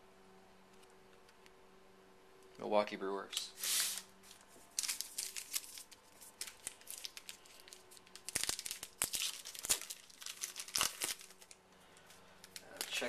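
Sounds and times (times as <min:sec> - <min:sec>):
plastic wrapper crinkling and tearing: 0:03.6 - 0:13.0.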